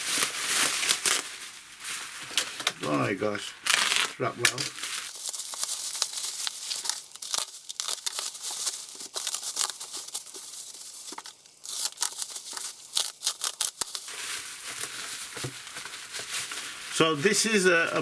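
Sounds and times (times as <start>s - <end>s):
packaging being torn open: 0.2s - 1.4s, 3.6s - 16.8s.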